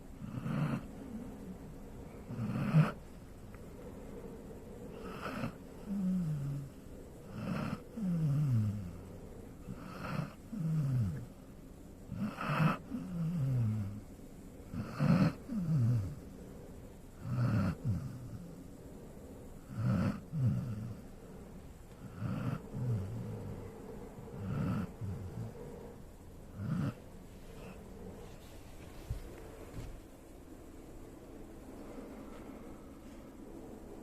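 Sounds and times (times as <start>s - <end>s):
dog snoring: 0.2s - 1.2s, 2.2s - 3.1s, 4.9s - 11.4s, 12.1s - 14.1s, 14.7s - 16.3s, 17.2s - 18.6s, 19.6s - 29.9s.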